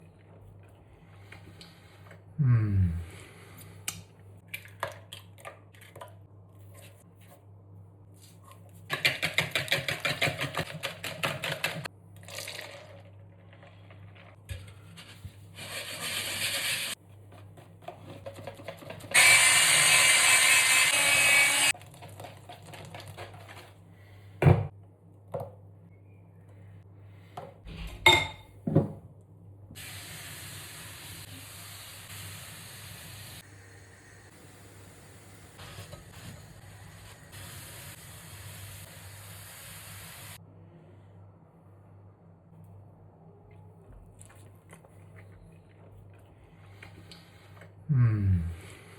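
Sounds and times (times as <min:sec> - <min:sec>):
kitchen appliance whirring: 0:15.6 - 0:17.0, 0:19.0 - 0:22.2
batter sizzling: 0:29.8 - 0:40.4.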